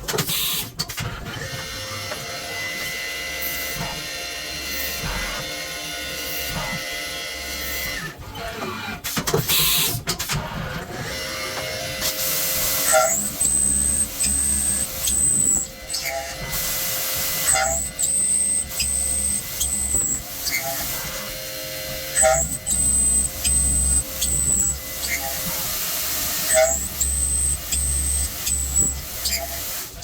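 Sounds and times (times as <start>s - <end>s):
milling machine motors whining: 10.4s - 30.0s.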